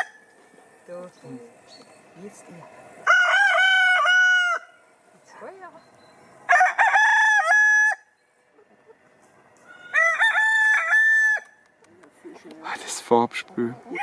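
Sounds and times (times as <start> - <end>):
rooster crowing: 0.0 - 0.2, 3.0 - 4.9, 6.4 - 8.2, 9.6 - 11.7.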